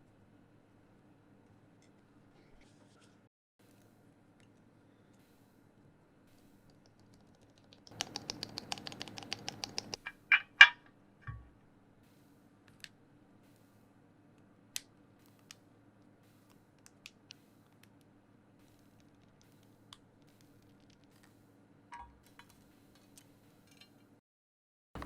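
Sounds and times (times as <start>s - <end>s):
mechanical keyboard typing: 7.2s - 10.0s.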